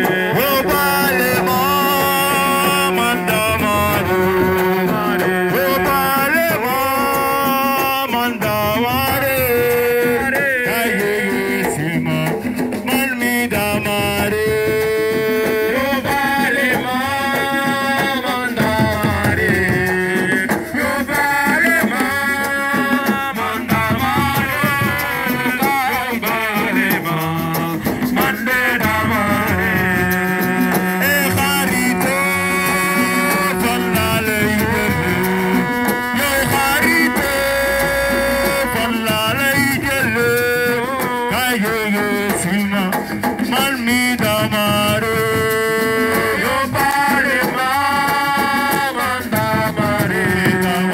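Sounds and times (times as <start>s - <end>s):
instrumental backing music: 0.0s - 50.9s
person singing ornamented lines: 0.0s - 50.9s.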